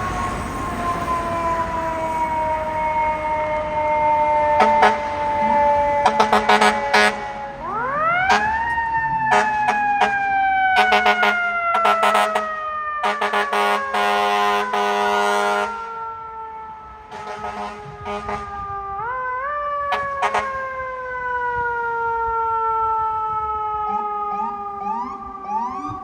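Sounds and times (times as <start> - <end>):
air horn blasts: 4.3 - 10.2, 10.8 - 15.9, 17.1 - 18.8, 19.9 - 20.6.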